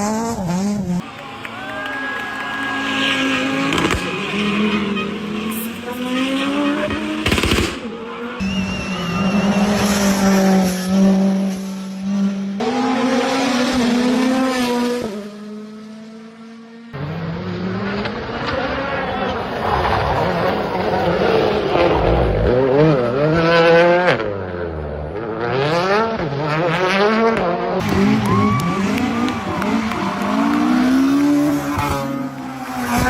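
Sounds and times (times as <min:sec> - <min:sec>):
rally car engines revving: 0:00.0 - 0:33.0.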